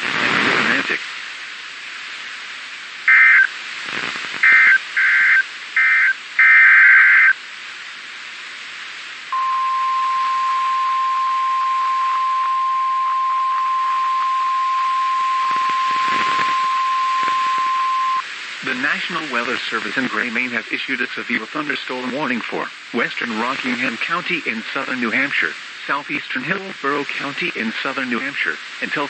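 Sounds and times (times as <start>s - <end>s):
steady attention tone: 9.3s - 18.2s
warbling digital data bursts: 13.8s - 18.2s.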